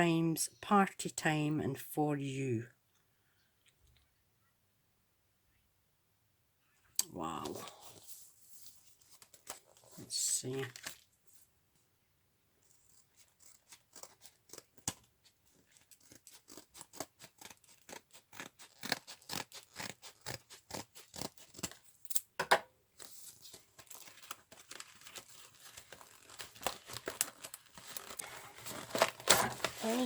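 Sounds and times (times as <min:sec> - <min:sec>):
plastic rustling and crinkling: 0:07.4 - 0:11.5, 0:23.0 - 0:30.0.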